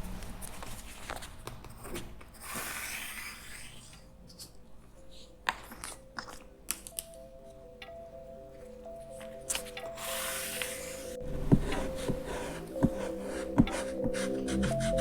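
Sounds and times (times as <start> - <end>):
faint music with held notes: 3.9 - 15.0.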